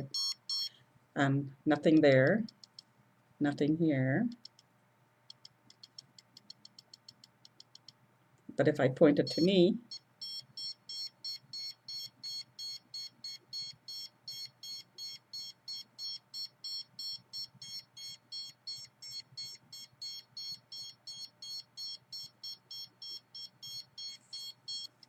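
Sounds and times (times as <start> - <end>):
high-pitched electronic meter beeps: 0.0 - 0.7, 9.2 - 25.0.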